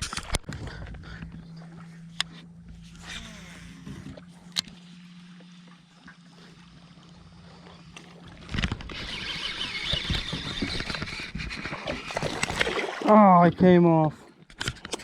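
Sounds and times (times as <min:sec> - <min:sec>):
steady low hum: 0:00.0 - 0:09.6
fish splashing at water surface: 0:11.0 - 0:13.2.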